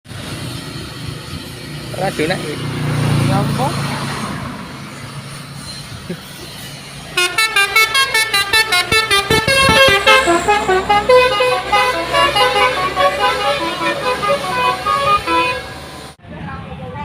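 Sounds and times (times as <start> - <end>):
multi-tone musical bus horn: 7.1 - 16.2
low engine hum: 7.2 - 16.4.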